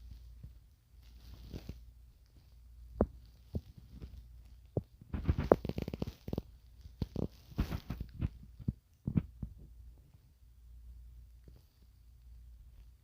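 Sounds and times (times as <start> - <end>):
cloth rubbing and rustling: 0.0 - 9.7.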